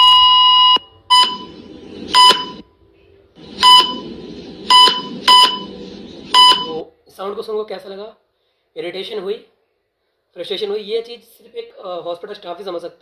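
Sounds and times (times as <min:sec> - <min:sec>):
long alarm tone: 0:00.0 - 0:02.6, 0:03.6 - 0:06.8
patient monitor beeps: 0:00.0 - 0:02.7, 0:03.6 - 0:04.1, 0:04.7 - 0:05.7, 0:06.3 - 0:06.8
steady background noise: 0:00.5 - 0:06.9.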